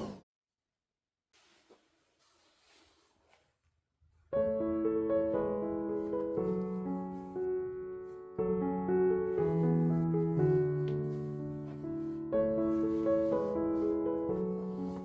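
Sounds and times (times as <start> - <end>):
piano music: 4.3 - 15.0.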